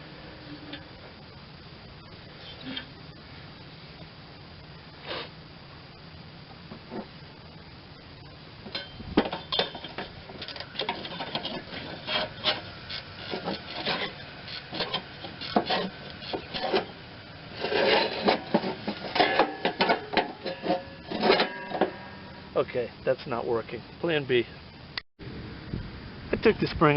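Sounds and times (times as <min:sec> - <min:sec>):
hand tools on steel: 0:08.7 - 0:22.3.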